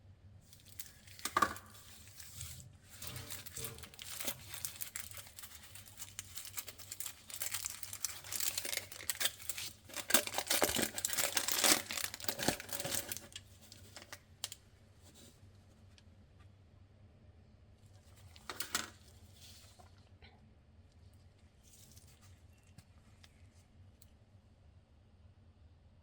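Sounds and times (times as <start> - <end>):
wrapper crinkling and tearing: 0.5 - 14.6, 18.0 - 19.8.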